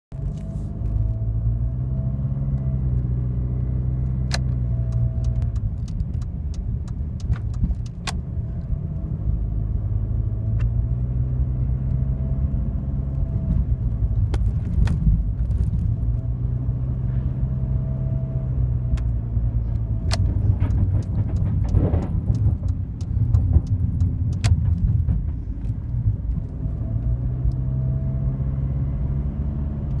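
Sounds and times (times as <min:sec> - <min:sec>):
diesel engine whine: 0:00.1 - 0:30.0
sharp clicks and rattles: 0:04.2 - 0:08.2, 0:20.0 - 0:27.6.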